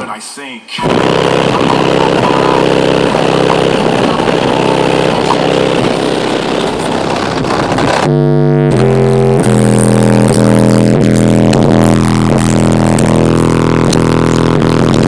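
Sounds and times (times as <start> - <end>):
distorted bass-heavy music: 0.7 - 15.0.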